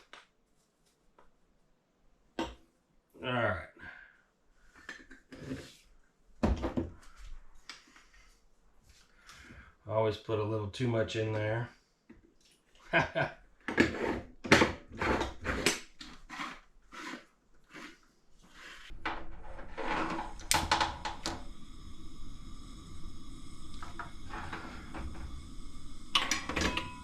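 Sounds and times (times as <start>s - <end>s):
gas burner hissing: 18.6s - 27.0s
metal coffee pot clicks and knocks: 26.1s - 27.0s.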